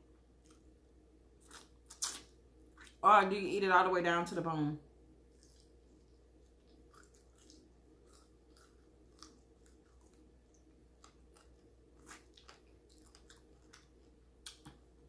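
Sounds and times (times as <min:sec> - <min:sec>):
person chewing: 0:00.4 - 0:00.8, 0:01.4 - 0:03.0, 0:05.3 - 0:14.8.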